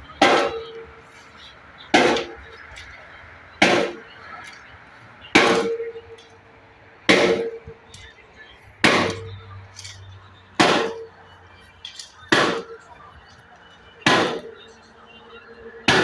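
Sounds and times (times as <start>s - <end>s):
concrete pump metallic clank: 0.2s - 4.7s, 5.3s - 6.4s, 7.1s - 8.2s, 8.8s - 13.4s, 14.0s - 14.8s.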